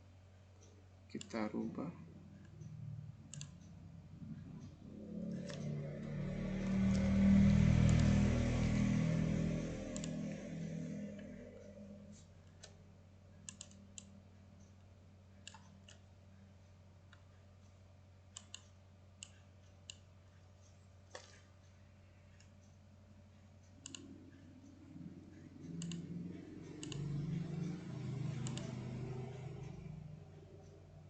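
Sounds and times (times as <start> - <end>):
low steady hum: 0.0 - 31.0
low rumble: 2.1 - 12.4, 23.8 - 31.0
computer mouse clicks: 3.3 - 12.8, 13.4 - 14.8, 15.4 - 16.1, 18.3 - 21.6, 23.6 - 30.9.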